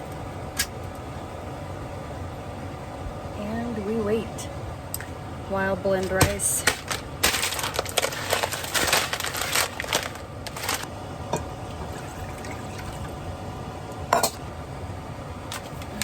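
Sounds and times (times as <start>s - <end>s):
kitchen handling noises: 6.0s - 12.2s, 14.0s - 14.4s
liquid pouring and splashing: 11.7s - 13.2s.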